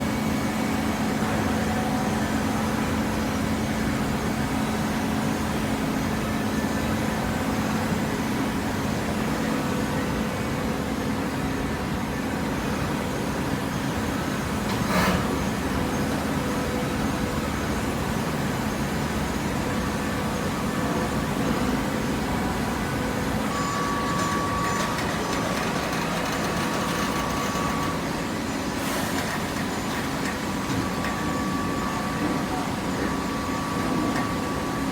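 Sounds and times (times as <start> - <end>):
baler machine humming: 13.9 - 34.9.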